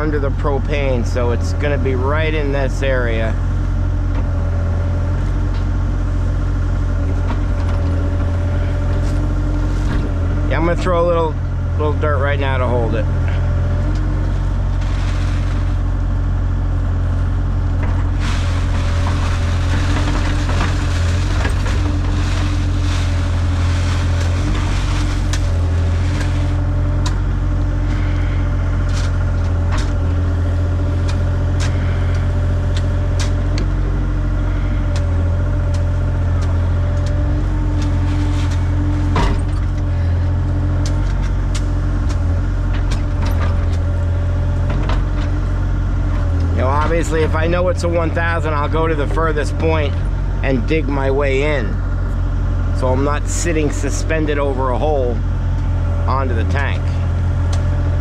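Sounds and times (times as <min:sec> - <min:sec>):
diesel engine running under load: 0:00.0 - 0:58.0
steady whine: 0:00.0 - 0:58.0
falling soil rushing: 0:14.4 - 0:16.6, 0:17.5 - 0:44.0.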